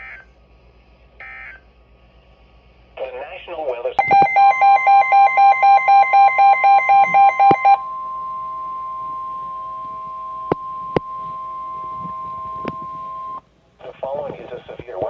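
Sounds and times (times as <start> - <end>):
pulsing beep: 4.0 - 13.4
steady loud alarm tone: 4.0 - 13.4.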